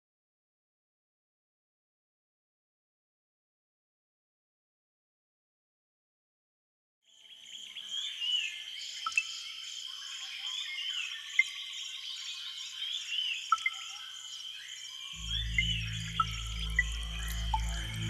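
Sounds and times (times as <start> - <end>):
pulsing insect chorus: 13.6 - 18.0.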